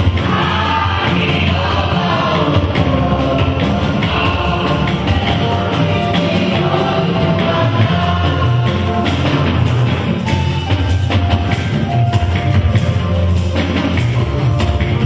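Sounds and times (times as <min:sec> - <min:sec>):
live hymn singing: 0:00.0 - 0:10.8
heavy bass and drums: 0:00.0 - 0:15.0.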